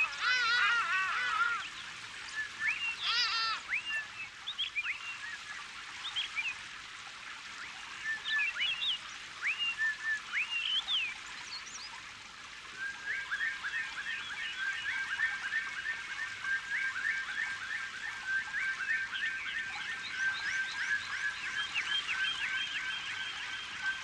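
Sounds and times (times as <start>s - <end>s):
birds chirping and trilling: 0.0s - 5.4s, 12.8s - 24.0s
harsh bird call: 2.9s - 3.8s.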